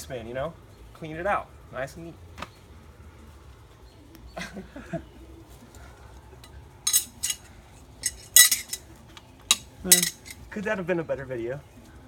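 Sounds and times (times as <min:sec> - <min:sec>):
metal knives clinking: 0:06.9 - 0:08.8, 0:09.5 - 0:10.4.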